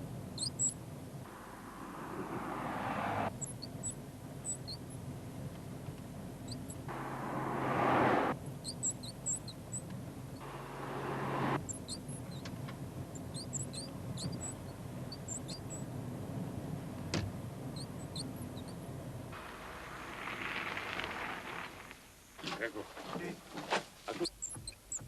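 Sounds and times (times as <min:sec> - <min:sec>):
low background hum: 0:00.0 - 0:20.6
short high-pitched squeaks: 0:24.1 - 0:25.0.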